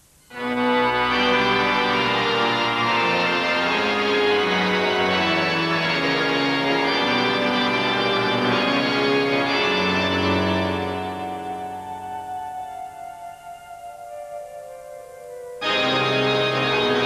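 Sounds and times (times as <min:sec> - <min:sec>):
organ music: 0:00.0 - 0:17.0.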